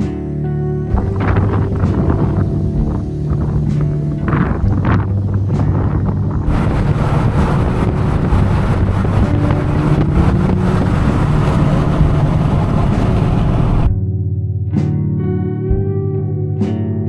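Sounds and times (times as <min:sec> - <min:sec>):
wind and road noise: 0:00.0 - 0:13.9
low hum: 0:00.0 - 0:14.1
vehicle engine running: 0:00.6 - 0:13.9.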